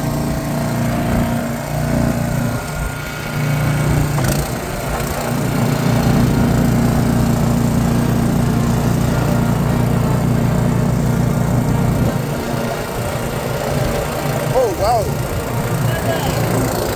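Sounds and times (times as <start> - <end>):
snowblower engine running: 0.0 - 16.9.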